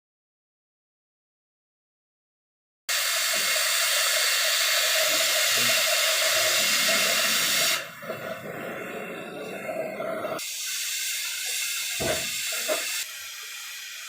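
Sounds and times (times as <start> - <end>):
cutting torch hissing: 2.9 - 14.0.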